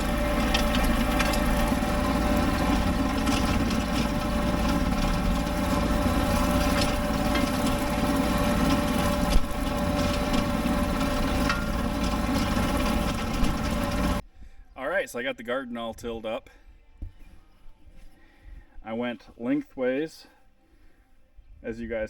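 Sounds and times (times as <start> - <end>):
tractor diesel engine running: 0.0 - 14.2.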